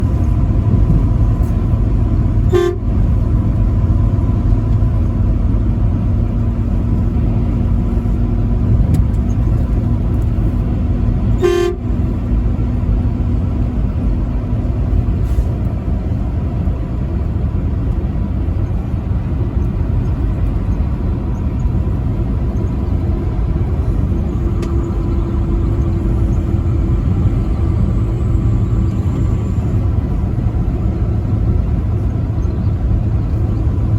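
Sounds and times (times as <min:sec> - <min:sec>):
vehicle driving drone: 0:00.0 - 0:33.9
truck horn blasts: 0:02.3 - 0:03.3, 0:11.3 - 0:12.3.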